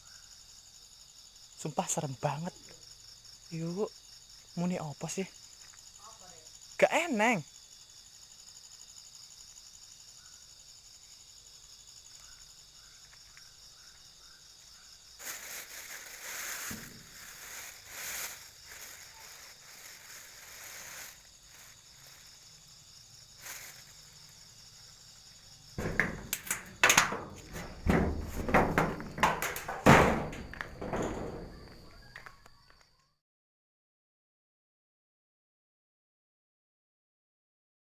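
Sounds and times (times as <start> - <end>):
high-pitched cricket-like trill: 0.0 - 28.2
rustling noise: 15.2 - 22.4, 23.4 - 24.0, 25.8 - 32.1
loud knocks and thumps: 25.8 - 32.0.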